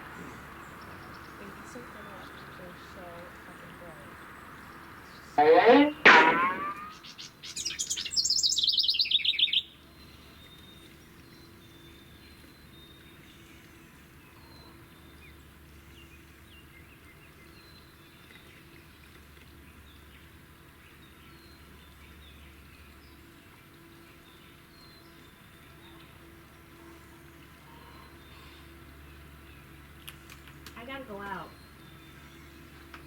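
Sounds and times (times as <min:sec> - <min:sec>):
wren singing rapid trill: 0:05.1 - 0:09.7
faint bird chirps: 0:05.2 - 0:10.6.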